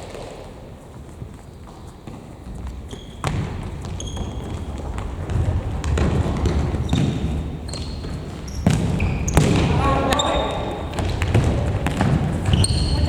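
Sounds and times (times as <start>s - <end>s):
sneakers squeaking on gym floor: 0.0s - 13.0s
ball kicked thuds: 8.0s - 9.8s.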